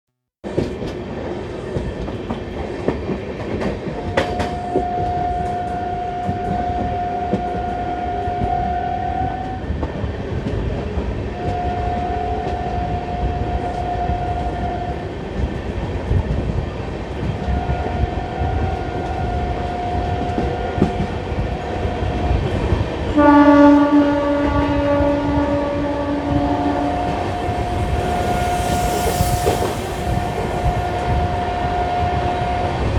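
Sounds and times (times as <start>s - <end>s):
train wheels clattering on rails: 0.5s - 8.7s, 26.4s - 32.4s
train horn: 4.3s - 9.8s, 11.2s - 15.1s, 23.1s - 32.9s.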